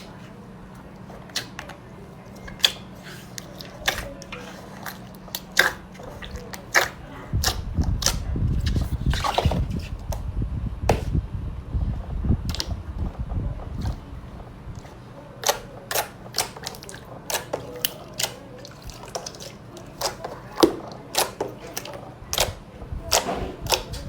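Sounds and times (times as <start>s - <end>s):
slime squishing with wet pops: 0.8s - 10.2s, 12.4s - 12.8s, 14.7s - 24.0s.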